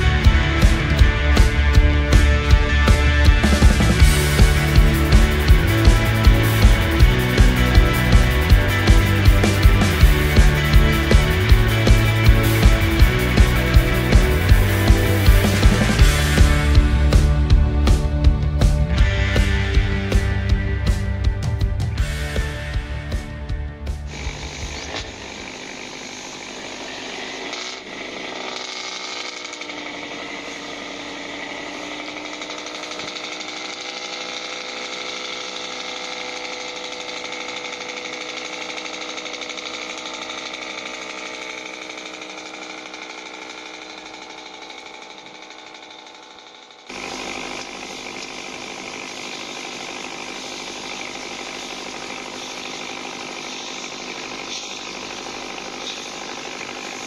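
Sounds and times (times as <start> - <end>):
toy steam boat putt-putt pulsing: 26.8 - 43.7.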